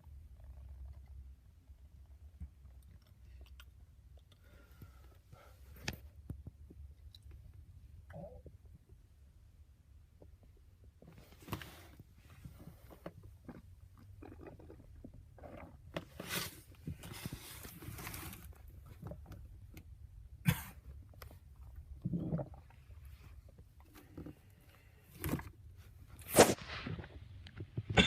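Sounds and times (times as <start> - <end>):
person coughing: 20.4 - 20.8.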